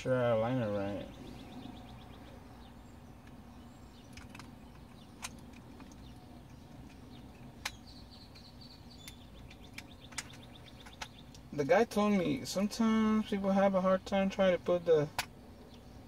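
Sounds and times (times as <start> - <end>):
faint metal clicks and taps: 4.0 - 11.5.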